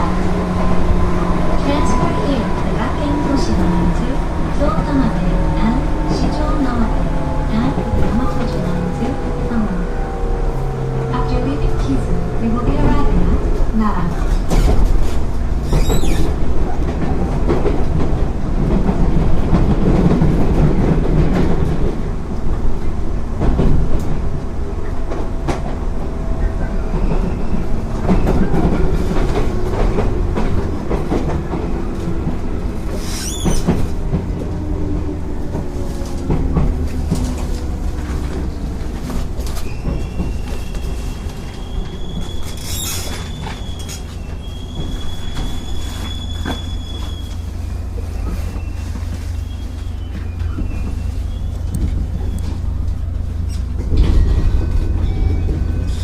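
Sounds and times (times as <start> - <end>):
train rail rumble: 0.0 - 56.0
high wheel squeal: 33.0 - 33.9, 39.4 - 52.6.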